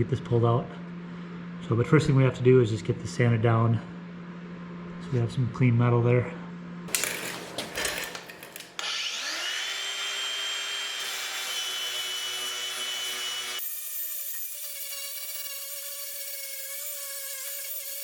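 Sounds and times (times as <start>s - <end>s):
power sander sanding metal: 6.9s - 18.0s.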